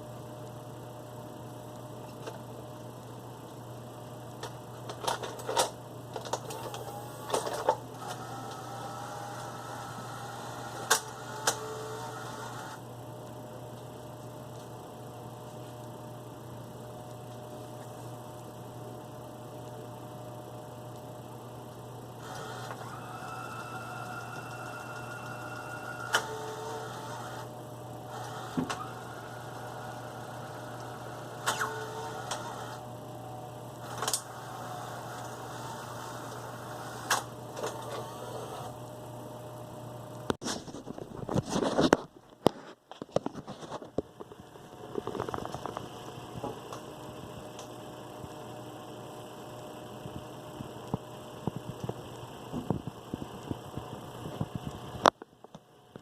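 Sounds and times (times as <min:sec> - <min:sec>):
steady low hum: 0:00.0 - 0:56.0
tape mechanism motor whine: 0:04.4 - 0:14.7, 0:19.7 - 0:55.1
video recorder mechanism clicking: 0:10.7 - 0:12.8
sharp mechanical click: 0:33.9 - 0:34.3.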